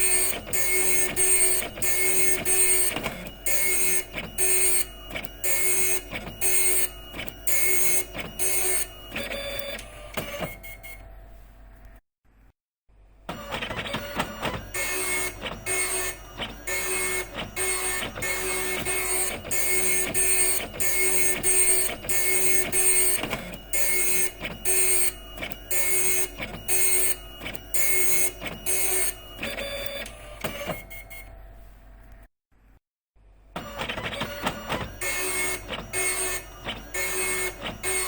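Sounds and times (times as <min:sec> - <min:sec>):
dot matrix printer printing: 0:00.0 - 0:11.2, 0:13.3 - 0:31.6, 0:33.6 - 0:38.0.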